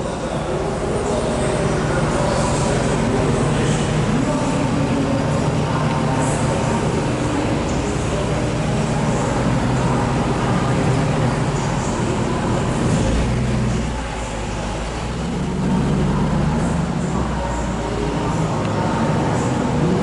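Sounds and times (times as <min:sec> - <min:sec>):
truck engine running: 0:00.0 - 0:20.0.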